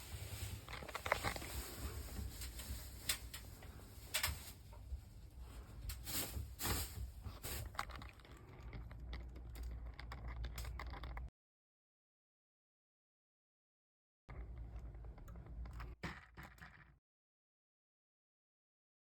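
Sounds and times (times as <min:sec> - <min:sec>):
light clicks and taps: 0:02.3 - 0:04.8.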